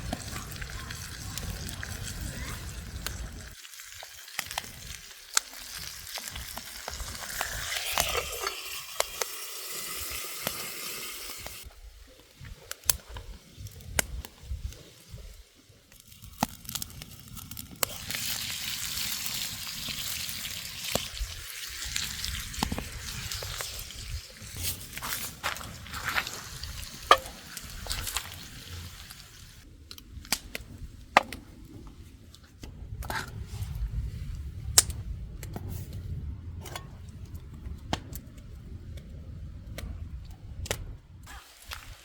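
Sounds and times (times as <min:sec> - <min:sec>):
sharp pops and crackles: 0:00.0 - 0:09.4, 0:11.4 - 0:18.4, 0:21.8 - 0:33.9, 0:34.7 - 0:42.0
food sizzling in a pan: 0:00.0 - 0:11.6, 0:17.4 - 0:29.6, 0:41.3 - 0:42.0.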